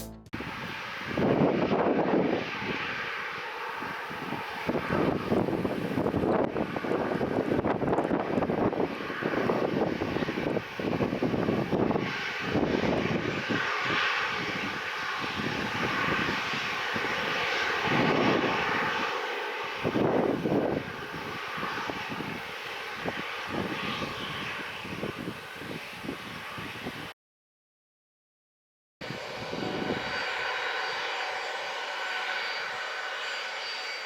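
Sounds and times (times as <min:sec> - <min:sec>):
airliner engines droning: 0:00.1 - 0:27.2, 0:29.0 - 0:34.0
wind buffeting microphone: 0:00.4 - 0:03.1, 0:03.8 - 0:27.1, 0:29.0 - 0:30.2.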